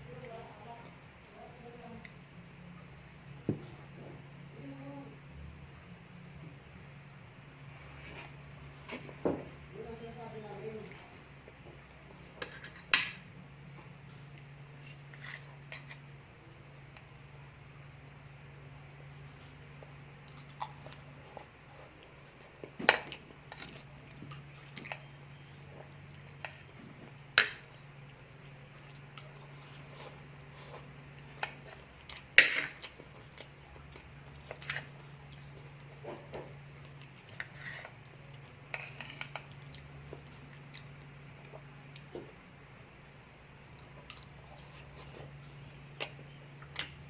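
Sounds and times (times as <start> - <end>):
faint steady hum: 0.0 - 47.0
person chewing: 19.4 - 42.2, 43.7 - 47.0.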